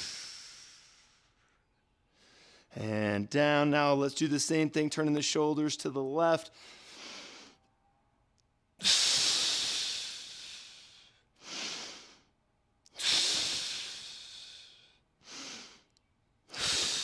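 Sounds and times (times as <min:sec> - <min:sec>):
man breathing deeply: 0:00.0 - 0:02.7, 0:06.5 - 0:07.6, 0:08.8 - 0:12.4, 0:13.0 - 0:15.9, 0:16.5 - 0:17.0.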